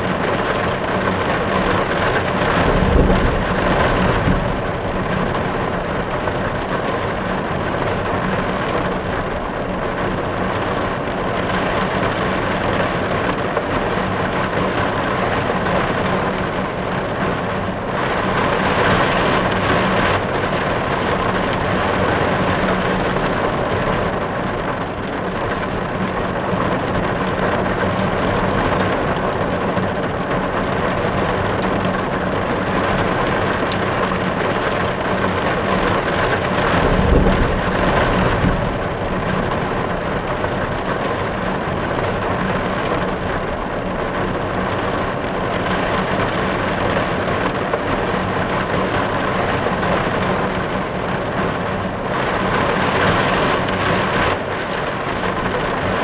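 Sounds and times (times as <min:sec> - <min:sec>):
rain drumming on car roof: 0:00.0 - 0:56.0
low rumble: 0:02.2 - 0:07.4, 0:36.0 - 0:42.1.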